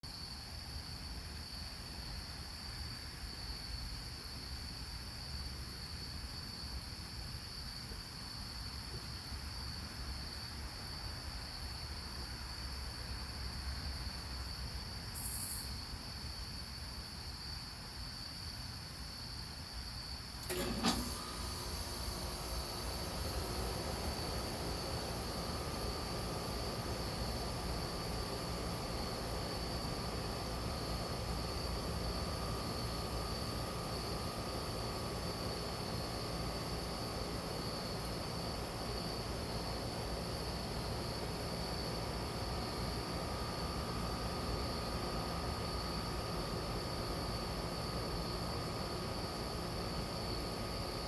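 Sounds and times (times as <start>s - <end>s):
short hiss: 20.4s - 24.1s.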